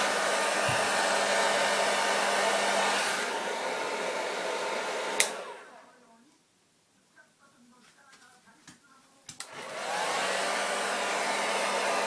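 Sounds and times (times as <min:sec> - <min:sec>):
hair dryer blowing: 0:00.0 - 0:05.9, 0:09.4 - 0:12.0
hair dryer switch click: 0:05.0 - 0:05.6, 0:09.3 - 0:10.3.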